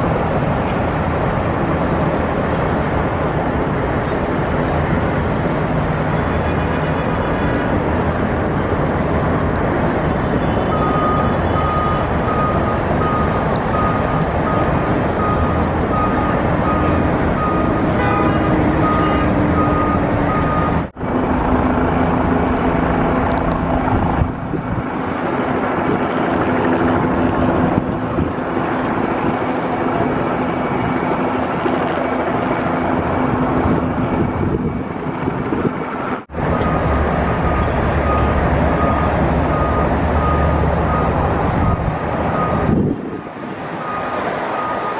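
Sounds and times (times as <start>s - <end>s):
heavy vehicle engines rumbling: 0.0s - 44.9s
backup alarm beeping: 10.7s - 20.9s, 36.5s - 42.7s, 43.8s - 44.9s.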